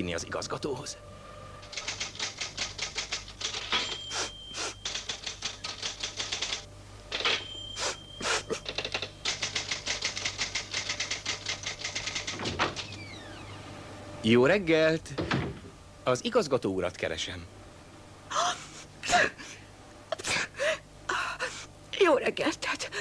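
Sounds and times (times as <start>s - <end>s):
typewriter keys clattering: 1.7s - 6.6s, 8.5s - 12.9s
short ringing tone: 3.7s - 4.8s, 7.2s - 8.5s.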